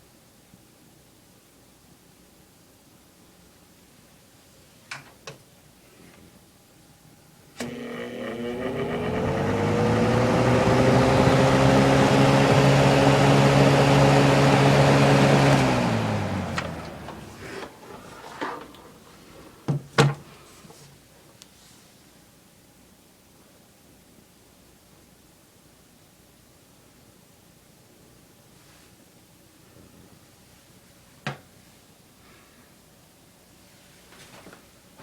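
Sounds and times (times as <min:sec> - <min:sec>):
box fan motor hum: 0:07.5 - 0:18.8.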